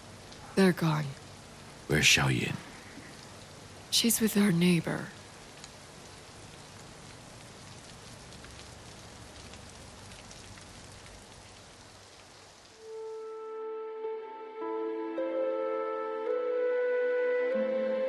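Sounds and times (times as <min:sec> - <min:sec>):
steady rain falling: 0:00.0 - 0:16.8
soft sustained music: 0:12.8 - 0:18.0.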